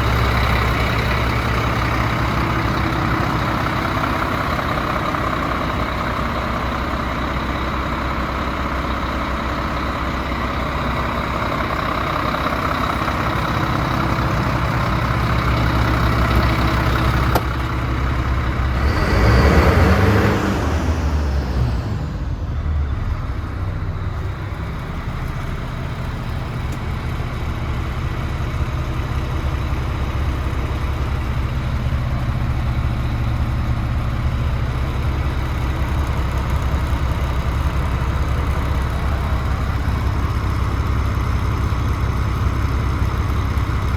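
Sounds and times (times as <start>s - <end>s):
truck diesel engine idling: 0.0s - 43.9s.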